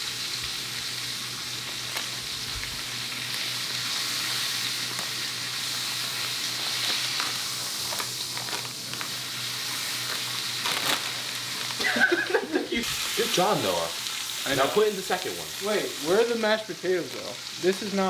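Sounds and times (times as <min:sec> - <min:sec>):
steak sizzling in a pan: 0:00.0 - 0:18.0.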